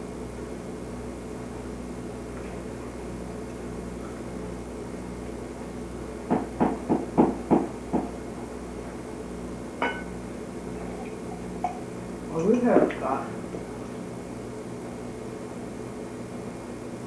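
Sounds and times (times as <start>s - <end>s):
background hum: 0.0s - 17.0s
metal clink with ringing tone: 9.8s - 10.1s.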